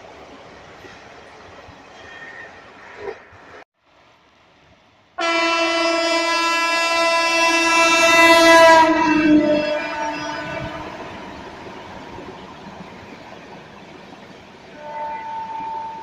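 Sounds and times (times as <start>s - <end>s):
locomotive horn blast: 5.2s - 11.5s, 14.7s - 16.0s.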